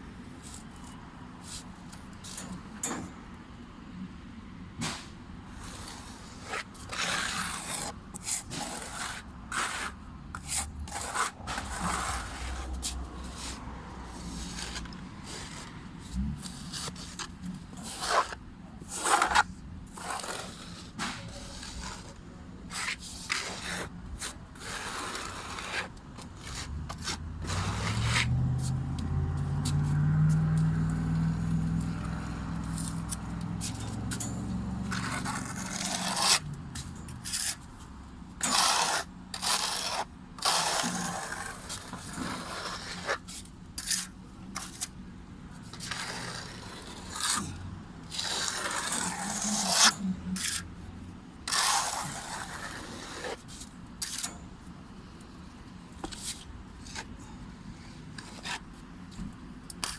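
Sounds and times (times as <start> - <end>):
hand tool scraping stucco: 5.6 - 30.6, 31.8 - 37.7, 38.4 - 45.0, 45.6 - 50.7, 51.4 - 54.4, 57.8 - 58.8
engine hum: 26.4 - 37.3.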